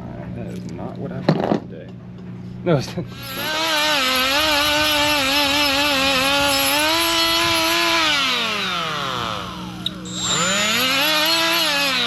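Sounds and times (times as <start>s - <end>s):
electric angle grinder whining: 3.1s - 12.0s.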